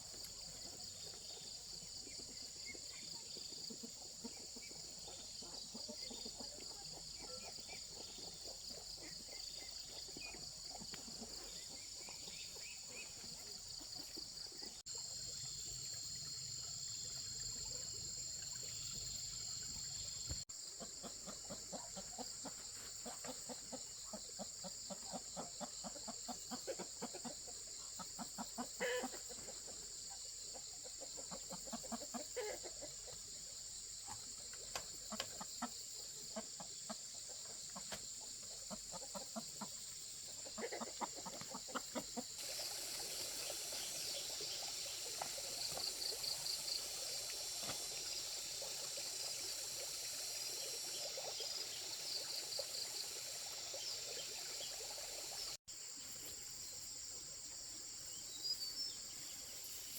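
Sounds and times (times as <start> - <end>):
chickens clucking: 0.0 - 14.8, 19.9 - 33.4, 34.0 - 49.3
running water: 41.0 - 55.6
high insect drone: 42.4 - 59.9.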